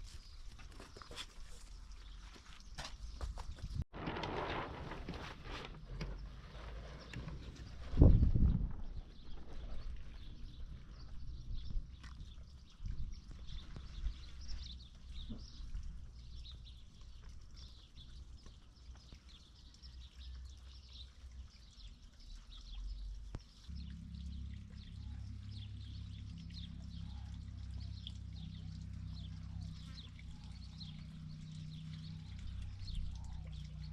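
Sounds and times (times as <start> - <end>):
steady low drone: 23.7 - 33.9.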